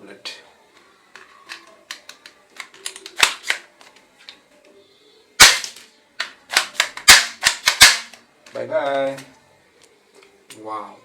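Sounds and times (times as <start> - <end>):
toy shotgun shot: 2.8 - 3.6, 5.4 - 5.8, 6.5 - 8.2
toy gun clicks: 5.4 - 8.2.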